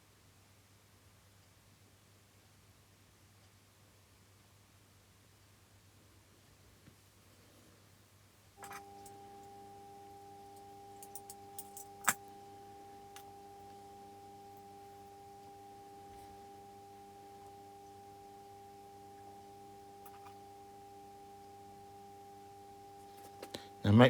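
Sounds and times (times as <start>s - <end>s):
faint clicks: 8.6s - 23.8s
low hum of held tones: 8.6s - 24.0s.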